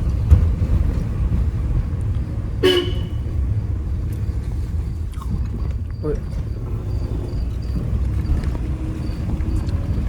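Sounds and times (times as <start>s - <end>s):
engine and road rumble: 0.0s - 10.0s
vehicle horn honk: 2.6s - 3.2s.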